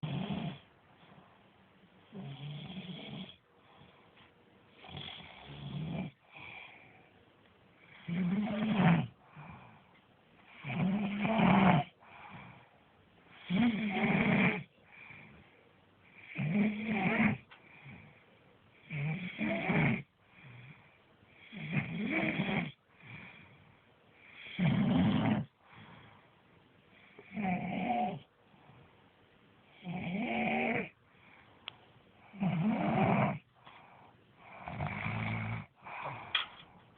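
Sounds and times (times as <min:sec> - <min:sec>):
person snoring: 0:00.0 - 0:00.7, 0:07.9 - 0:09.6, 0:10.5 - 0:12.4, 0:13.4 - 0:14.7, 0:16.2 - 0:18.0, 0:18.8 - 0:20.1, 0:21.5 - 0:23.2, 0:24.4 - 0:25.5, 0:29.8 - 0:31.0, 0:32.3 - 0:33.5, 0:34.4 - 0:36.5.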